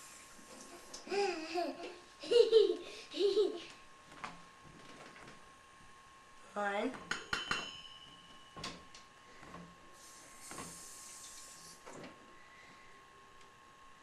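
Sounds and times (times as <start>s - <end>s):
short hiss: 10.0s - 11.8s.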